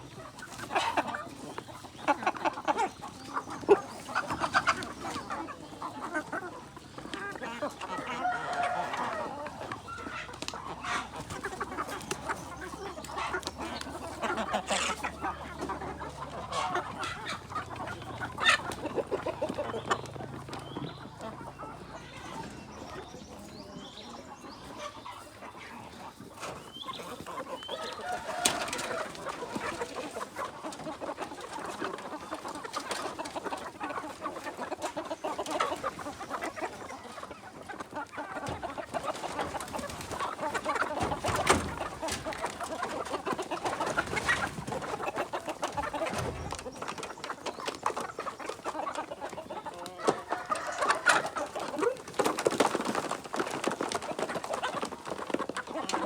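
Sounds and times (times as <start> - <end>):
flock of chickens clucking: 0.0 - 56.0.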